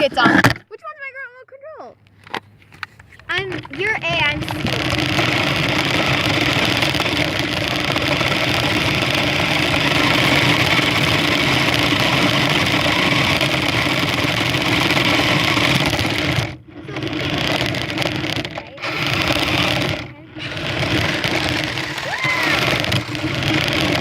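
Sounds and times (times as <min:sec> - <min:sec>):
toy car motor whirring: 0:02.9 - 0:24.0.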